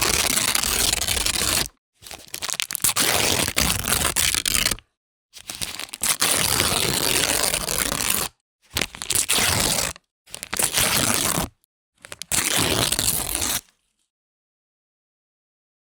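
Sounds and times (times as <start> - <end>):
paper ripping: 0.0 - 1.7, 12.1 - 13.7.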